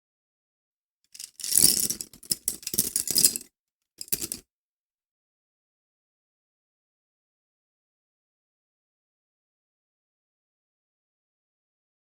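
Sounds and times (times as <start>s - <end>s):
pencil clattering on hard surface: 1.2s - 4.4s.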